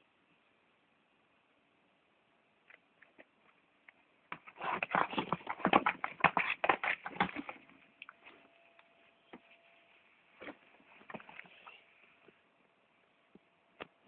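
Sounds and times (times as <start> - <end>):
cat scrabbling in a box: 4.4 - 7.6.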